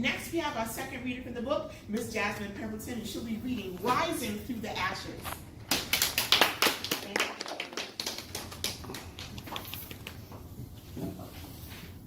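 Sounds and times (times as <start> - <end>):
people clapping: 5.7 - 10.2.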